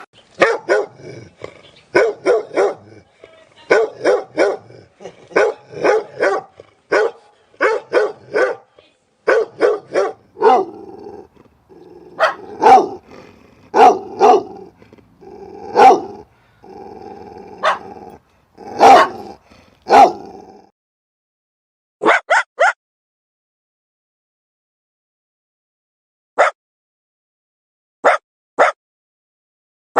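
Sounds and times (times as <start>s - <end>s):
dog barking: 0.4s - 1.0s, 2.0s - 3.0s, 3.7s - 4.7s, 5.3s - 8.7s, 9.3s - 10.9s, 12.1s - 13.0s, 13.7s - 14.7s, 15.7s - 16.2s, 17.6s - 20.3s, 22.0s - 22.8s, 26.4s - 26.6s, 28.0s - 28.8s
dog growling: 0.8s - 2.0s, 4.6s - 6.9s, 10.1s - 20.7s.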